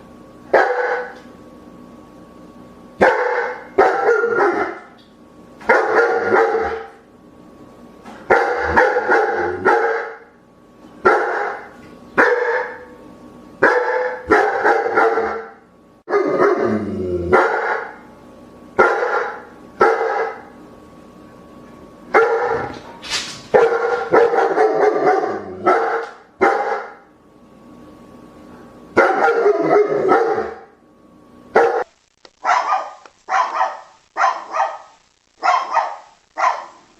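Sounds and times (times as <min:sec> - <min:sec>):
dog barking: 0:00.5 - 0:01.2, 0:03.0 - 0:04.9, 0:05.6 - 0:07.0, 0:08.2 - 0:10.3, 0:11.0 - 0:12.9, 0:13.6 - 0:16.7, 0:17.3 - 0:18.0, 0:18.8 - 0:20.5, 0:22.1 - 0:22.8, 0:23.5 - 0:27.0, 0:29.0 - 0:30.7, 0:31.6 - 0:36.8.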